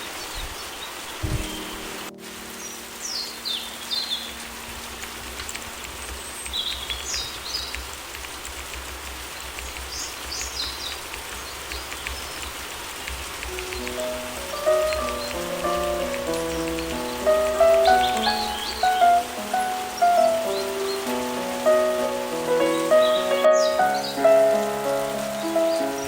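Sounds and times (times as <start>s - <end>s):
rain falling: 0.0s - 26.0s
low piano chord: 1.2s - 6.0s, 13.6s - 26.0s
high falling bird chirps: 13.6s - 26.0s.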